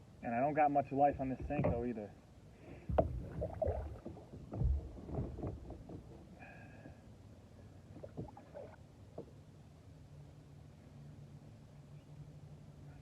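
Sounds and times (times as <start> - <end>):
dull thumps against hull: 1.0 - 2.0, 2.6 - 6.5.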